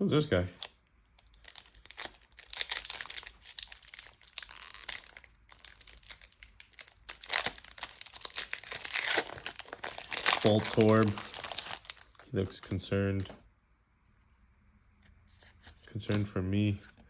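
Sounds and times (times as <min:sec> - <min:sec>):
foil wrapper crinkling: 0:00.6 - 0:13.3
cards being flipped: 0:15.0 - 0:17.0.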